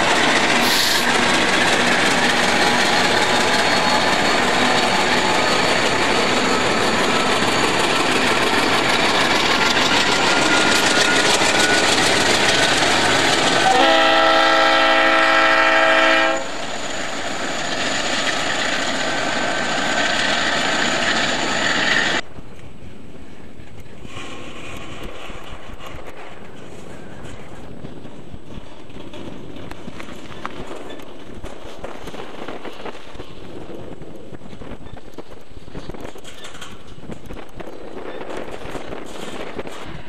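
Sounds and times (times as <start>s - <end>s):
freight train rumbling past: 0.0s - 40.0s
locomotive chime air horn: 13.6s - 16.6s.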